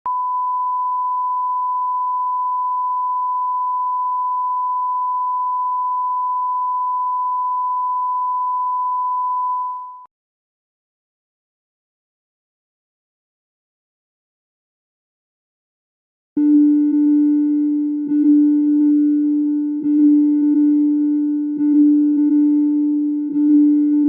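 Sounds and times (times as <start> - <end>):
steady electronic tone: 16.4 - 24.0.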